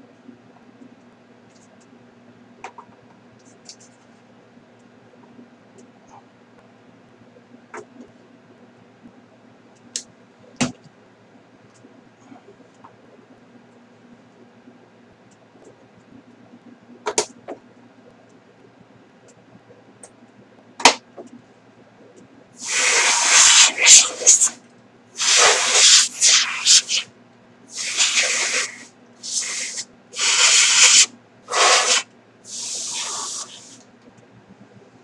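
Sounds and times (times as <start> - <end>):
hissing spray bursts: 22.6 - 24.6, 25.2 - 27.0, 27.7 - 33.8.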